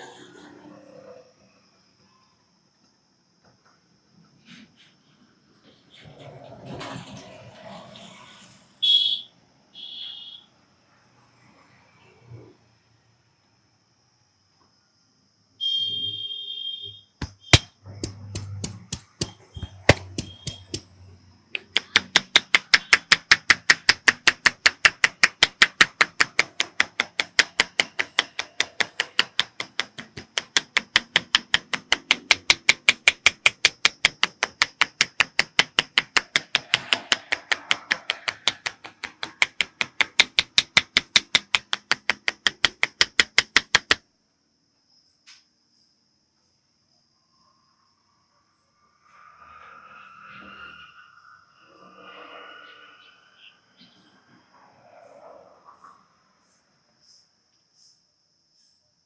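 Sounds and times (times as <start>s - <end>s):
hands tapping and chopping on head: 17.2s - 20.9s, 21.6s - 44.0s
sharp claps: 17.2s - 20.9s, 21.6s - 44.0s.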